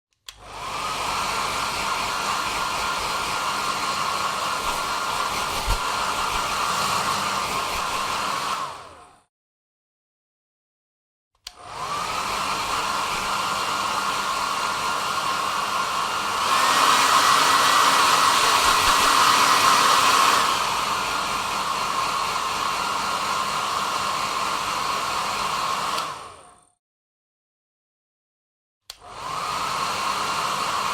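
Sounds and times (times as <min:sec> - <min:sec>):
hair dryer switch click: 0:00.2 - 0:00.5, 0:11.4 - 0:11.7, 0:25.9 - 0:26.2
hair dryer motor whine: 0:00.3 - 0:09.3, 0:11.4 - 0:26.8, 0:28.9 - 0:30.9.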